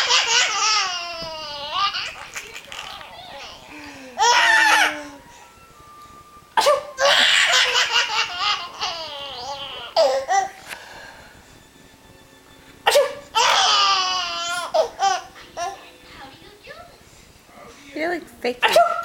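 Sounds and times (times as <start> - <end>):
baby laughing: 0.0 - 5.2, 6.6 - 10.6, 12.9 - 15.8
baby sneezing: 6.6 - 6.9, 12.9 - 13.2.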